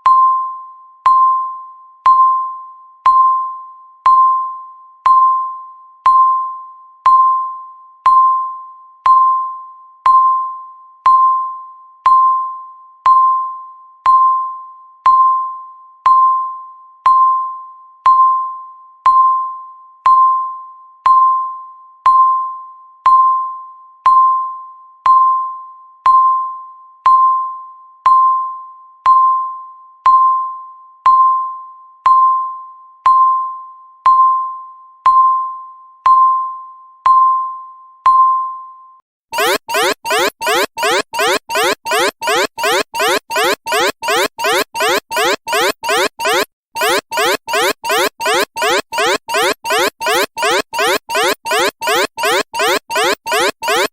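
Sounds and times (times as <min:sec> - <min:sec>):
timer beeps: 0:39.4 - 0:53.9.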